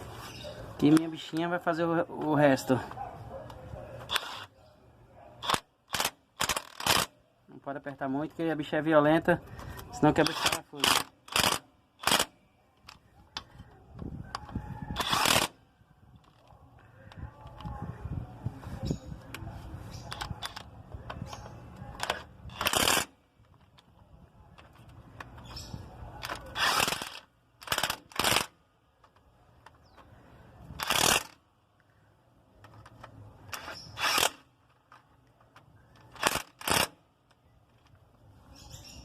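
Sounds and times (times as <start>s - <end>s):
impact wrench bursts: 10.2s - 12.3s, 26.5s - 28.6s, 30.8s - 31.4s, 33.5s - 34.5s.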